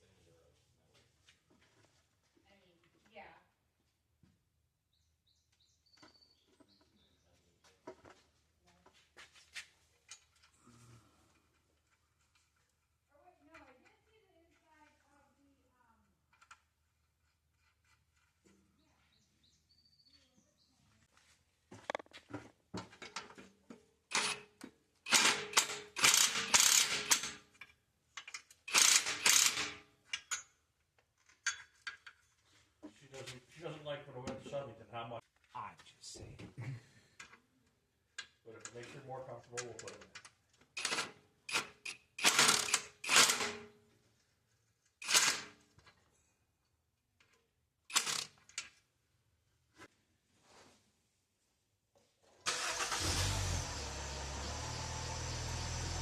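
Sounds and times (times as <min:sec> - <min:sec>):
ratchet wrench clicking: 0:25.1 - 0:27.4, 0:28.7 - 0:30.4.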